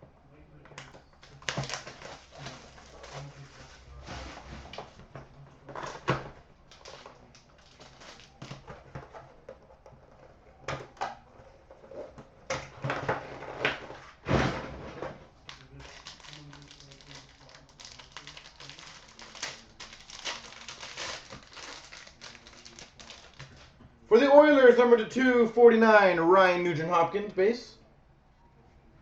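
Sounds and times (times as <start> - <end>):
cards rustling and flicking: 15.5 - 23.7.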